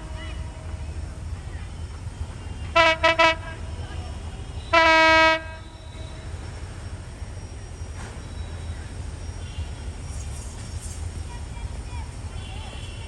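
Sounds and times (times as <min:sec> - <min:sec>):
train horn blasts: 0:02.7 - 0:03.7, 0:04.6 - 0:06.2.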